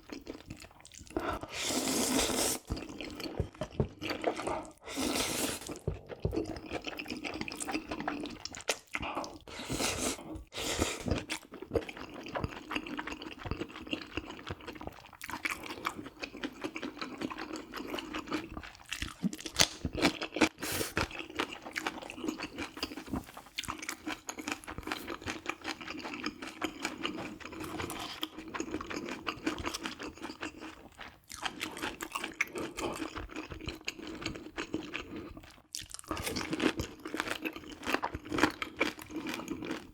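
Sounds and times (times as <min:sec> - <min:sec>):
crunchy chewing: 0:10.9 - 0:39.9.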